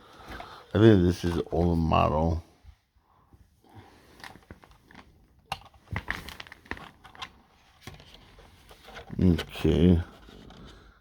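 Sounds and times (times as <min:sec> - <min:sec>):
plastic crinkling and rustling: 0:04.0 - 0:11.0.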